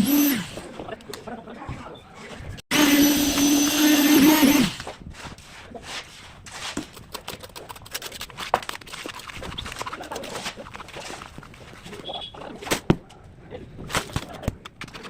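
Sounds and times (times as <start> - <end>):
power tool motor winding down: 0.0 - 0.6, 2.7 - 4.8
light scrapes and knocks: 4.8 - 12.1.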